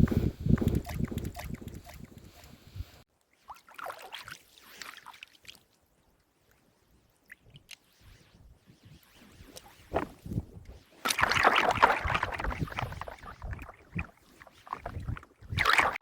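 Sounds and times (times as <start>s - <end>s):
small clicks: 0.6s - 2.6s.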